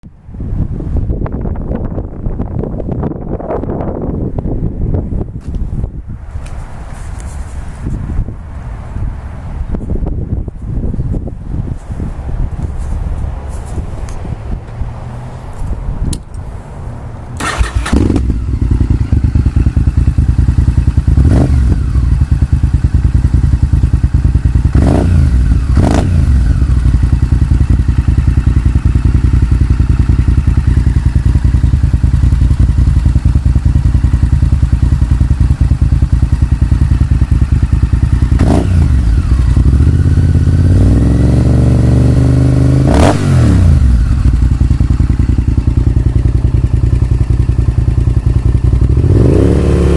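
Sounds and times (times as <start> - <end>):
motorcycle engine idling and revving: 7.8 - 49.9.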